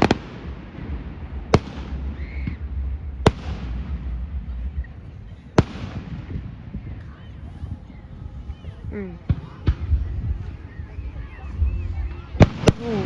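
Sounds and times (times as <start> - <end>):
fireworks bangs: 0.0 - 7.1, 9.2 - 10.7, 12.4 - 13.0
low rumble: 0.0 - 13.0.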